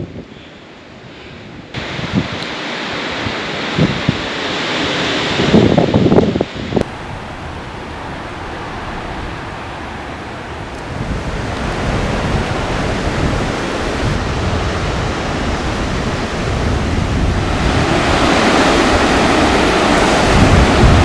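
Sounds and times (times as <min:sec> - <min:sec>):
waterfall rushing: 0:06.8 - 0:21.0.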